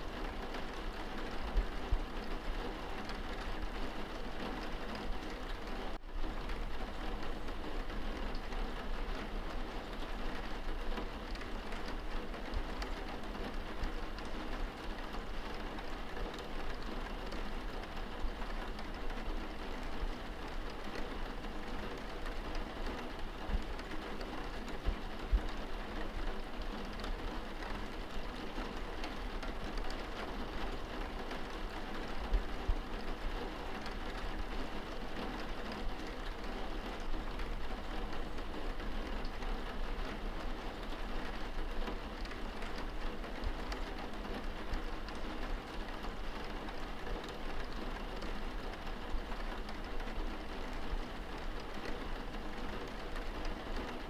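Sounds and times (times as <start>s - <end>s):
rain on window glass: 0.0s - 54.0s.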